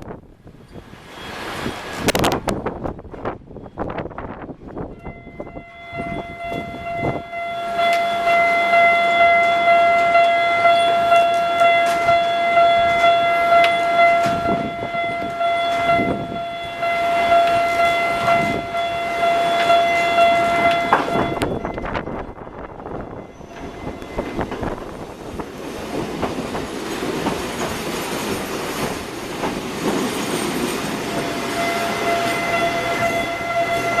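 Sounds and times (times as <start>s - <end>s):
wind buffeting microphone: 0.0s - 7.4s, 14.2s - 16.8s, 17.5s - 19.1s, 20.4s - 34.0s
level crossing bell pulsing: 30.4s - 34.0s.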